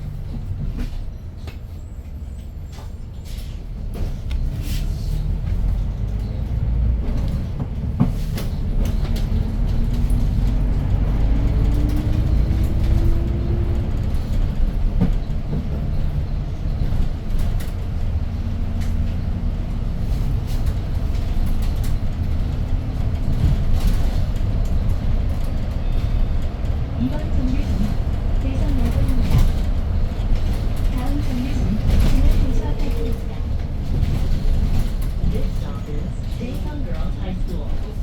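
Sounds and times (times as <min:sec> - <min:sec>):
bus engine rumbling: 0:00.0 - 0:38.0.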